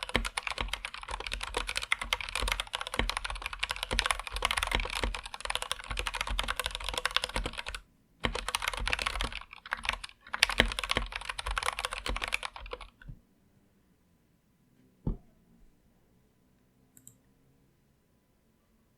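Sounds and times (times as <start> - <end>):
mechanical keyboard typing: 0.0 - 13.1.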